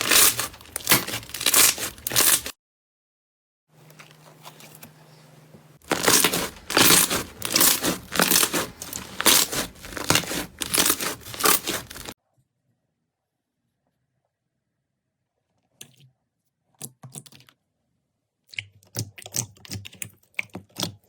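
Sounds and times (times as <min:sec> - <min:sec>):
crunchy slime crackling: 0:00.0 - 0:02.5, 0:05.8 - 0:12.2.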